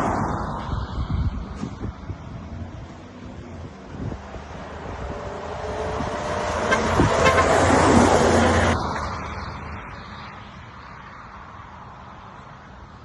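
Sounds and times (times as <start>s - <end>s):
truck passing: 0.0s - 13.0s
truck horn: 6.3s - 8.8s.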